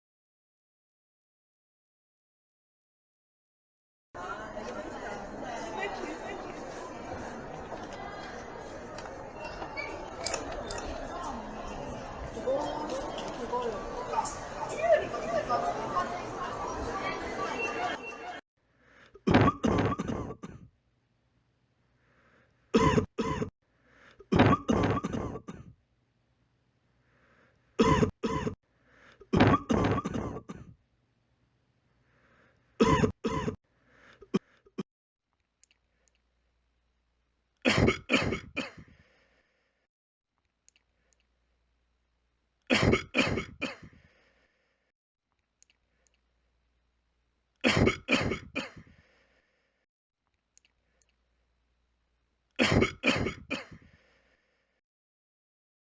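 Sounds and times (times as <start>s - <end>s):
person coughing: 19.2s - 20.7s, 22.8s - 23.5s, 24.2s - 25.7s, 27.8s - 28.6s, 29.2s - 30.7s, 32.8s - 33.6s, 37.7s - 38.9s, 42.7s - 44.0s, 47.6s - 48.9s, 52.6s - 53.8s.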